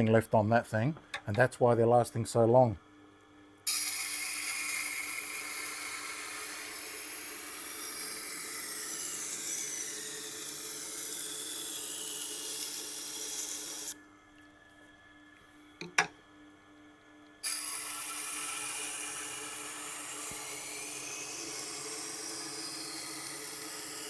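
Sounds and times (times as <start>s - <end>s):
knife grinding on sharpening wheel: 3.7s - 14.0s, 17.4s - 24.0s.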